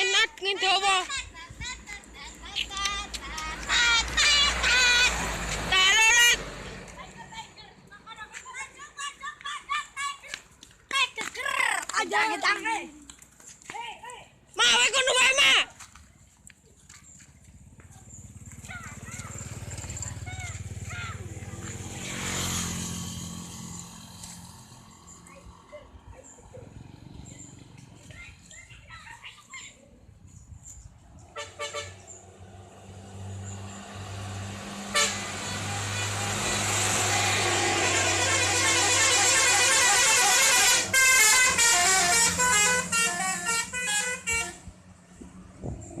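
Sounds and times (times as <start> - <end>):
bus engine passing by: 0.0 - 13.2, 16.6 - 46.0
faint traffic noise: 0.0 - 46.0
bus horn playing a melody: 3.7 - 6.6, 31.4 - 32.0, 34.8 - 44.7.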